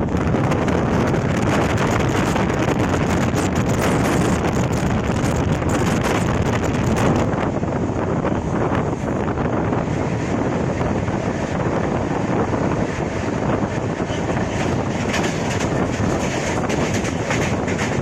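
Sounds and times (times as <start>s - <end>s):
train wheel and track noise: 0.0s - 18.0s
wind buffeting microphone: 0.0s - 18.0s.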